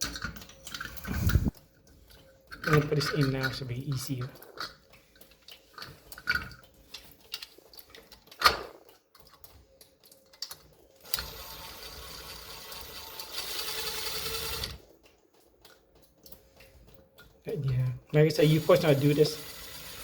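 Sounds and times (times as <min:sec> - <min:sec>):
mechanical whirring: 0:01.0 - 0:01.6, 0:11.0 - 0:14.8.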